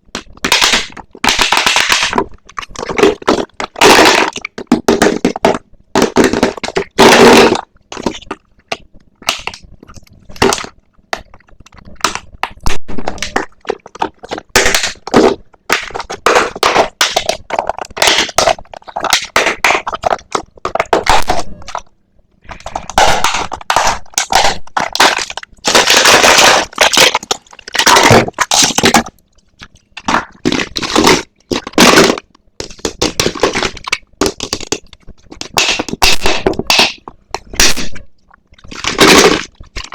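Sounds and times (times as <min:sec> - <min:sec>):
toy packaging crinkling: 0:22.5 - 0:29.1.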